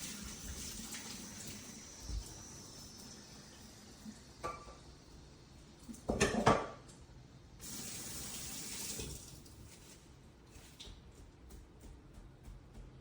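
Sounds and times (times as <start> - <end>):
water running from a tap: 0.0 - 6.4, 7.6 - 9.9
dishes clattering: 6.1 - 6.8.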